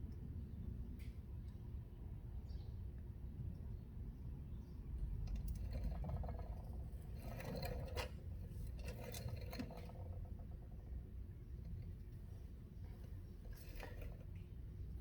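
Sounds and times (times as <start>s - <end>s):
low steady rumble: 0.0s - 15.0s
scraping and rustling handling noises: 12.1s - 14.5s.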